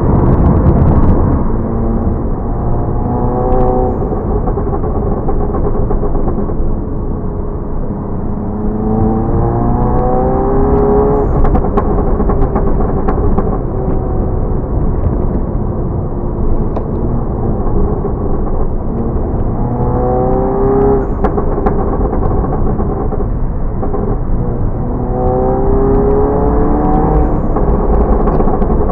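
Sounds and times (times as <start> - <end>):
exhaust pops and crackles: 0.0 - 8.0, 8.6 - 28.9
car engine accelerating: 0.0 - 28.9.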